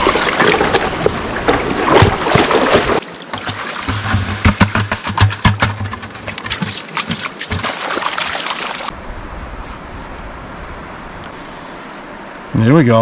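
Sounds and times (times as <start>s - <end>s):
water rushing: 0.0s - 9.0s
water sloshing and splashing: 0.0s - 9.0s.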